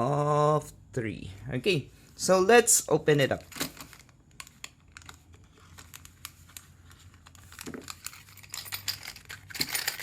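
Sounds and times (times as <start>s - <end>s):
crinkly rustling: 3.5s - 10.0s.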